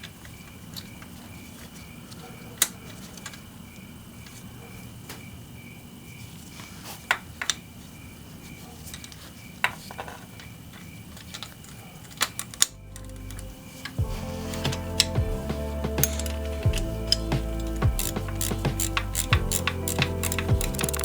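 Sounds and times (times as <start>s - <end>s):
metal tools clinking on engine parts: 8.8s - 21.0s
background music: 12.7s - 21.0s.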